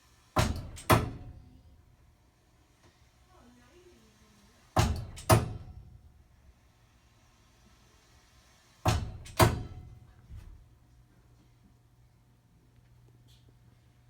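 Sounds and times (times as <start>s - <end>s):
water pipes banging: 8.9s - 9.9s.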